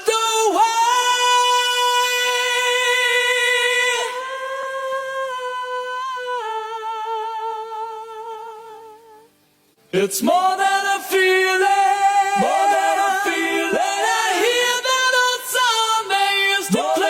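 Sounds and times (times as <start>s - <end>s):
person singing a cappella: 0.0s - 9.3s, 9.9s - 17.0s.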